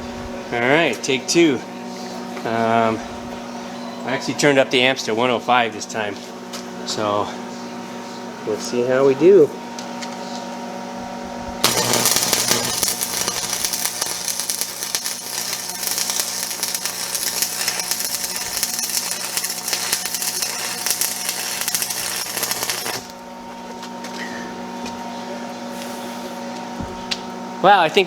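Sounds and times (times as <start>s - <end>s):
steady electrical hum: 0.0s - 28.0s
welding arc crackling sizzle: 11.6s - 24.2s.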